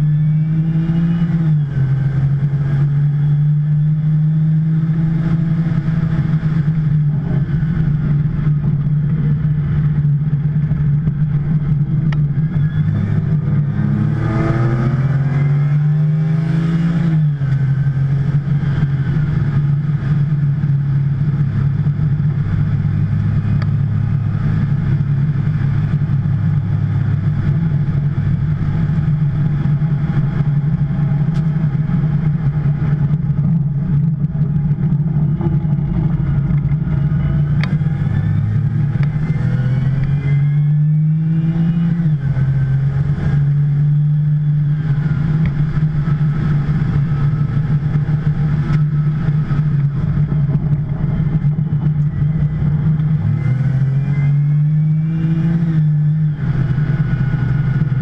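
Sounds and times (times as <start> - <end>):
car engine under way: 0.0 - 58.0
wind noise: 4.5 - 58.0.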